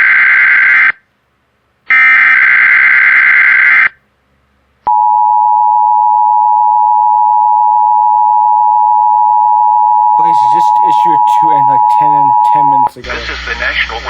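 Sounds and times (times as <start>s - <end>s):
steady alert tone: 10.2s - 13.2s.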